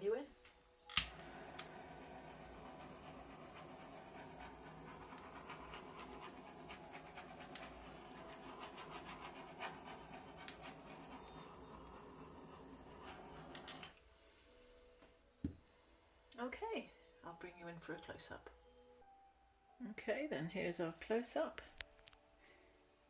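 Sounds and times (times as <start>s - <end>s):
handheld torch hissing: 0.8s - 14.0s.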